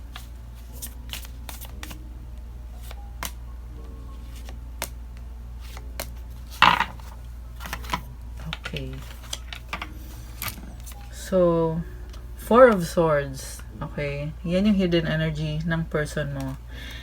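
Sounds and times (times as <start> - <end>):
cards shuffling: 0.0 - 2.1, 2.7 - 11.3, 16.2 - 17.0
soft background music: 0.0 - 17.0
cards clicking and tapping: 0.1 - 2.0, 2.8 - 11.2, 16.2 - 17.0.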